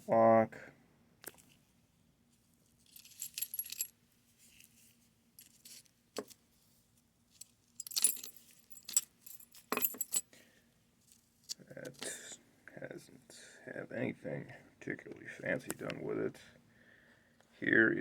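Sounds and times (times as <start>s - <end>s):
locks and keys clinking: 2.9s - 3.9s, 7.8s - 10.3s.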